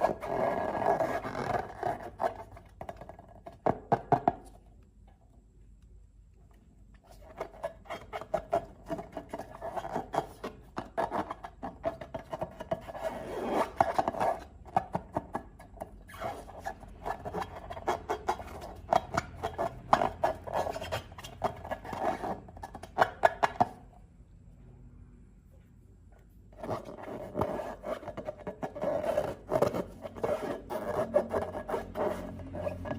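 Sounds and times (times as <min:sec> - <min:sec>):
slime rubbing and scraping: 0:00.0 - 0:03.6, 0:07.0 - 0:23.8, 0:26.5 - 0:32.9.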